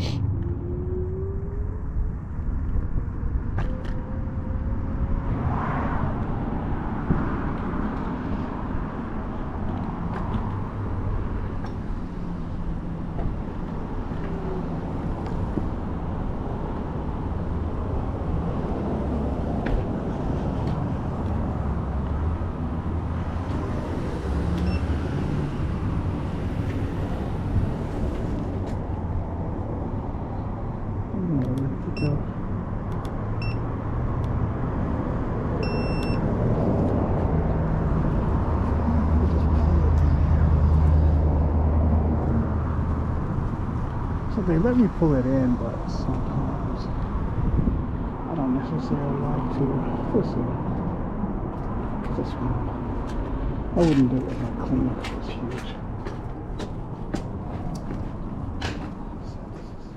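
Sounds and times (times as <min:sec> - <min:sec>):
wind buffeting microphone: 0:47.0 - 0:48.3.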